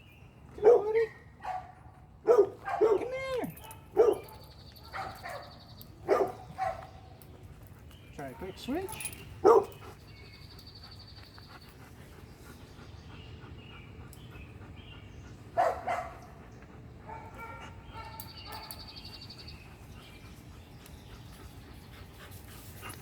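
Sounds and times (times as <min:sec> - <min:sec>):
dog barking: 0:00.6 - 0:06.9, 0:08.4 - 0:09.8, 0:15.6 - 0:16.2, 0:17.1 - 0:18.8.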